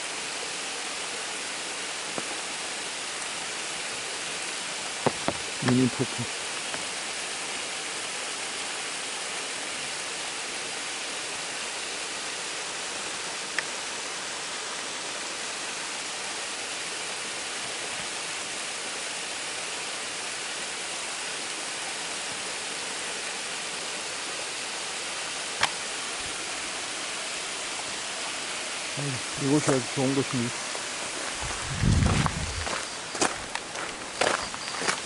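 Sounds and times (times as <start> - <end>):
waterfall rushing: 0.0 - 35.0.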